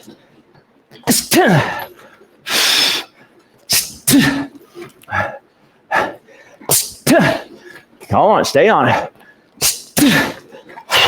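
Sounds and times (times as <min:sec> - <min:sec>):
man grunting: 0:01.1 - 0:01.9, 0:07.0 - 0:07.5, 0:08.8 - 0:11.0.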